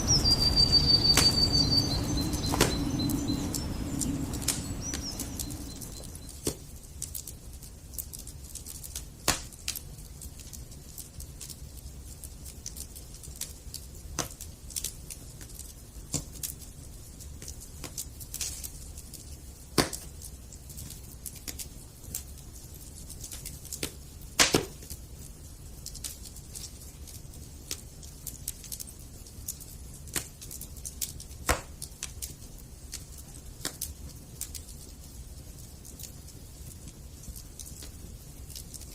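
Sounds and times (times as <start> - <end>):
campfire crackling: 0.0 - 38.9
loud pops of burning wood: 1.0 - 38.9.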